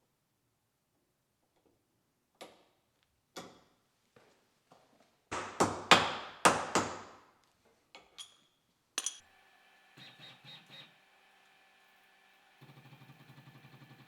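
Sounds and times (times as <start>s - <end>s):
metal pieces clanking: 9.0s - 9.2s.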